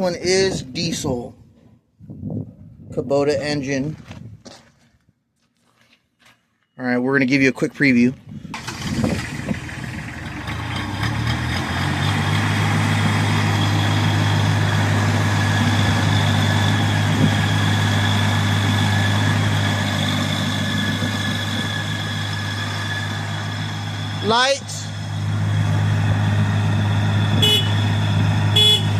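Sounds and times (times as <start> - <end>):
diesel engine running: 8.4 - 28.9.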